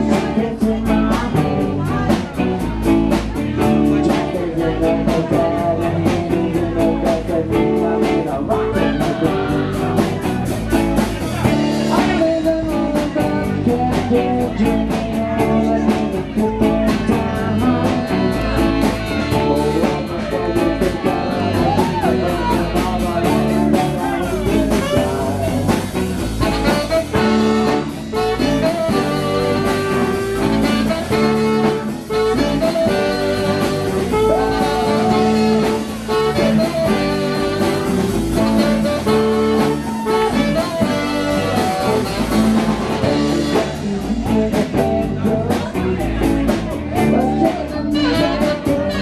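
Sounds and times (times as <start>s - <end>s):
rock band playing: 0.0s - 49.0s
saxophone: 15.4s - 44.2s, 47.0s - 49.0s.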